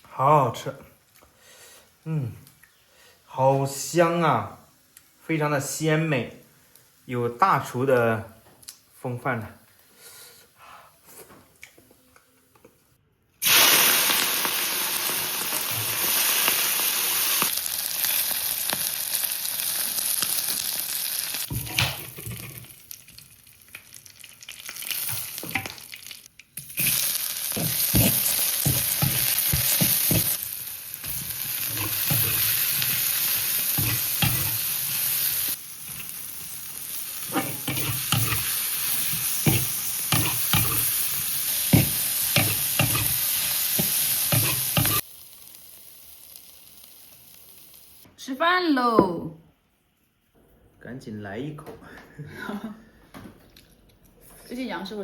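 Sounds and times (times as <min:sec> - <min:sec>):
food sizzling in hot oil: 0:13.4 - 0:48.1.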